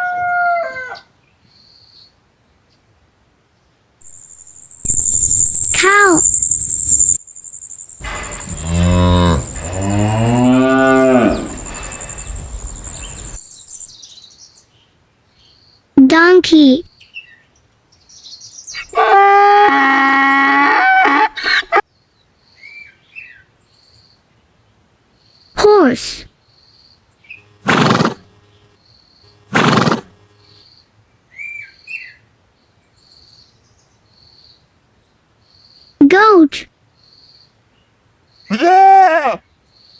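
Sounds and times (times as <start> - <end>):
faint high bird calls: 4.0 - 14.0
bird chirping: 4.0 - 14.6
cow mooing: 8.0 - 13.4
horse snorting: 8.0 - 13.4, 27.6 - 28.4, 29.5 - 30.3.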